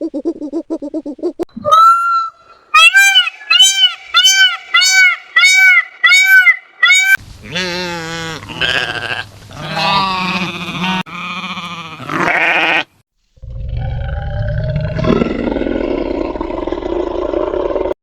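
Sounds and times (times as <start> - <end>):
rapid honking calls: 1.7 - 7.2
sheep or goats bleating: 2.8 - 13.0.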